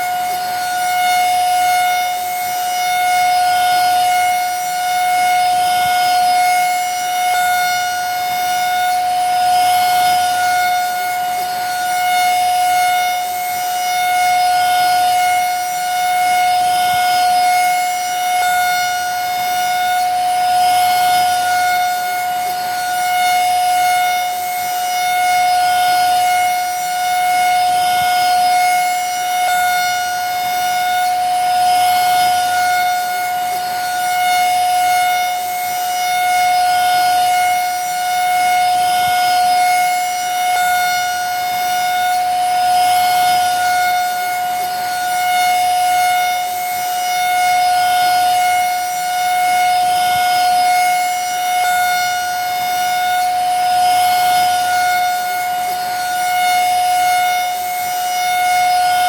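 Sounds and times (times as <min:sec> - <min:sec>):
vacuum cleaner running: 0:00.0 - 0:04.8.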